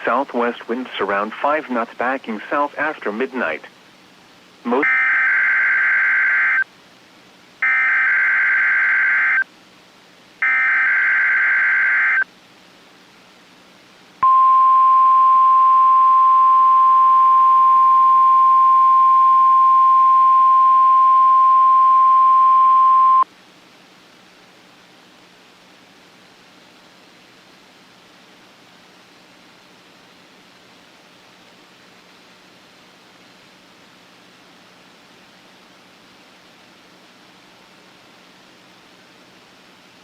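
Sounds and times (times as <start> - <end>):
steady radio warning tone: 0.0 - 3.7, 4.6 - 6.6, 7.6 - 9.4, 10.4 - 12.2, 14.2 - 23.2.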